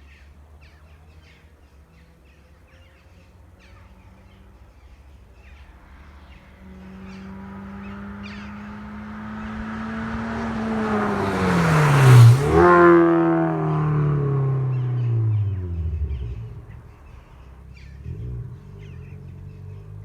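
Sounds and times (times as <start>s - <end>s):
car exhaust note passing by: 5.4s - 20.0s.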